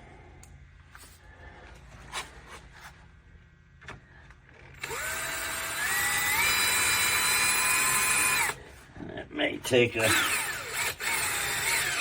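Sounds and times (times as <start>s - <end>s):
cordless drill motor whine: 4.8s - 8.6s, 10.0s - 12.0s.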